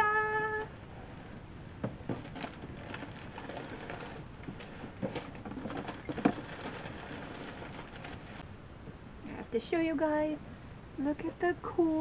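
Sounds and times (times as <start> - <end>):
packing material rustling: 2.0 - 8.4.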